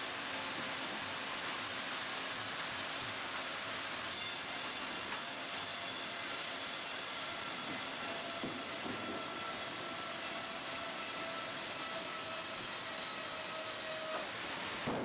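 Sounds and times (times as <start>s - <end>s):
sawmill machinery hissing: 4.1s - 15.0s.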